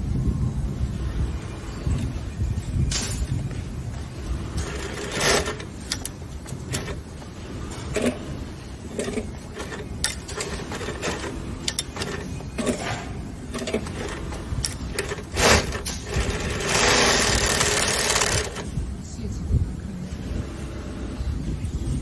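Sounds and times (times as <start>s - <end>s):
sewing machine running: 4.4s - 7.1s, 7.8s - 12.8s, 13.5s - 18.7s.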